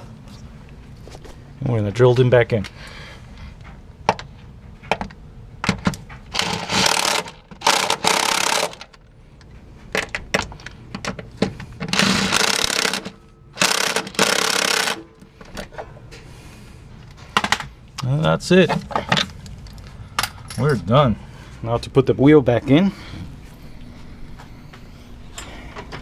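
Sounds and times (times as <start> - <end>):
impact wrench bursts: 6.3 - 8.9, 11.8 - 15.2.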